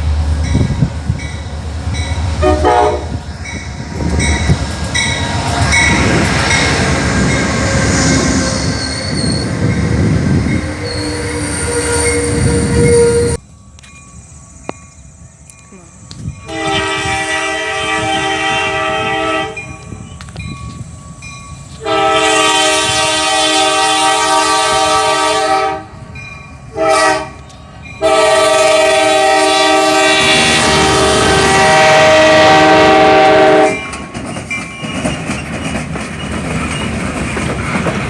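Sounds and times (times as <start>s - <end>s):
low train rumble: 0.0s - 38.0s
locomotive air horn blasts: 2.4s - 3.2s, 16.5s - 19.7s, 21.8s - 26.0s, 26.7s - 27.4s, 28.0s - 33.9s.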